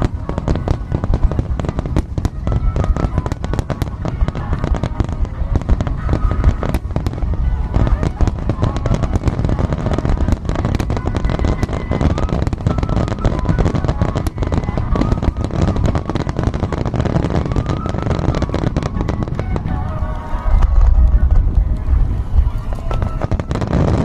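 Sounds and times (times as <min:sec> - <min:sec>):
fireworks bangs and crackles: 0:00.0 - 0:24.0
low rumble of booms: 0:18.4 - 0:24.0.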